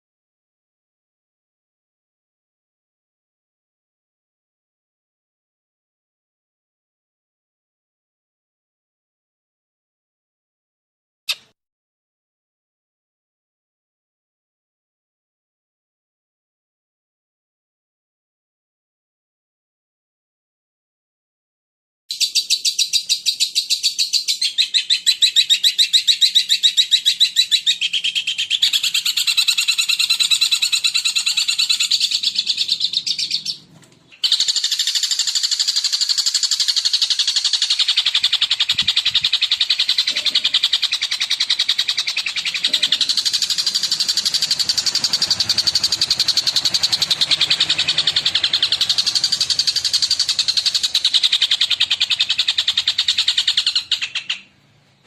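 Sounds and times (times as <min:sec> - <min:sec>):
bird singing fast chatter: 0:22.1 - 0:54.6.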